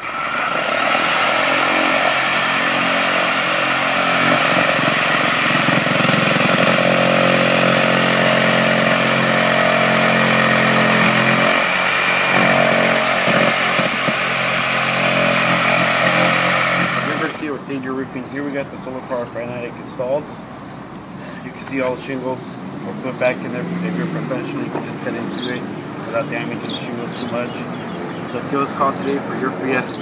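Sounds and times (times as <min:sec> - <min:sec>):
motor running with high whine: 0:00.0 - 0:17.5.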